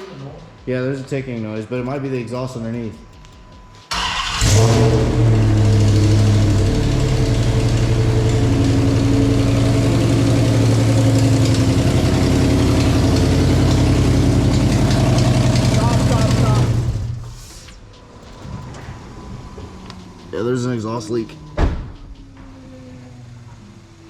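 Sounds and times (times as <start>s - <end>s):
exhaust leak ticking: 1.8s - 23.4s
car engine idling: 3.0s - 24.0s.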